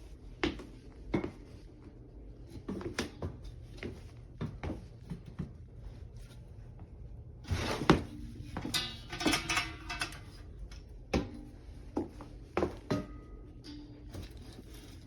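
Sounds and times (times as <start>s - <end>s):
clattering and scraping: 7.5s - 10.6s.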